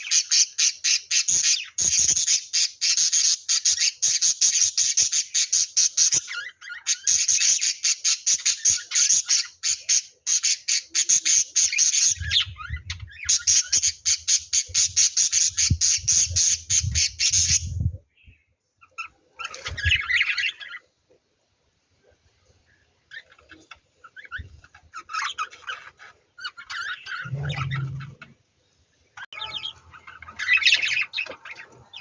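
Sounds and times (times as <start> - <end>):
lovebirds squawking chirps: 0.0 - 17.8, 18.8 - 20.9, 23.1 - 28.4, 29.3 - 32.0
low rumble: 27.2 - 28.3.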